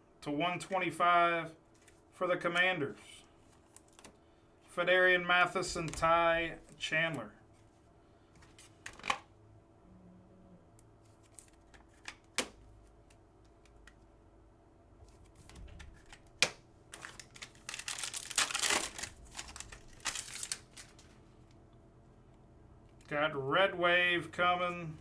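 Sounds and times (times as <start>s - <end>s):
card packs crinkling and rustling: 3.3s - 4.2s, 11.1s - 14.0s, 15.0s - 21.6s.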